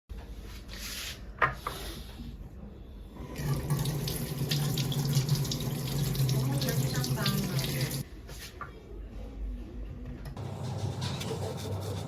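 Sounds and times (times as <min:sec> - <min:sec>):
tap water splashing into sink: 0:03.4 - 0:08.0.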